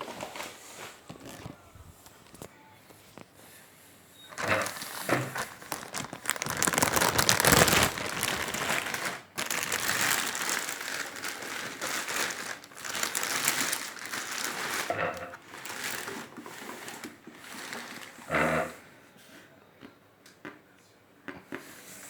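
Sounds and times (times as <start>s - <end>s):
rustling crinkling: 0.0s - 3.4s, 4.3s - 18.3s.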